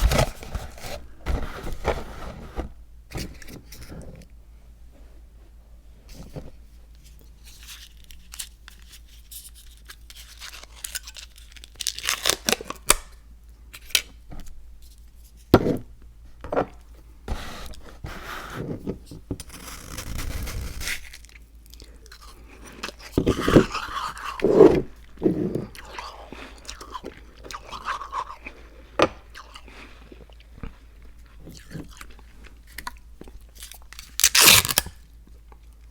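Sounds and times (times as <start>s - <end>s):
crinkling rustles: 0.0s - 4.0s.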